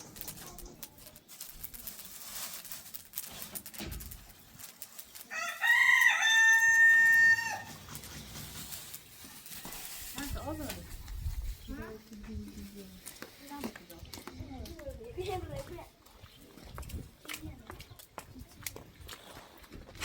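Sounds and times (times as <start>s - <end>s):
rooster crowing: 5.3s - 7.7s.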